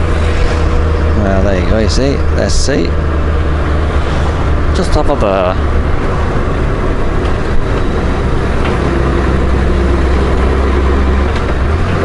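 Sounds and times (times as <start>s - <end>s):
motorcycle engine cruising: 0.0s - 12.0s
wind noise: 5.6s - 12.0s.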